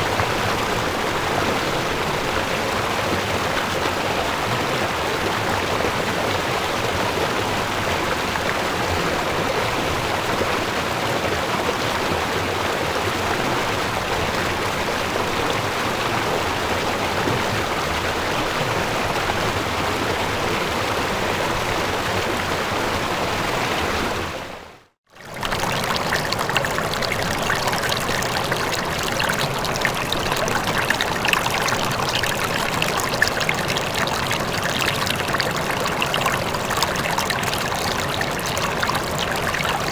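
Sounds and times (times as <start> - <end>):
river water flowing and splashing: 25.2 - 39.9.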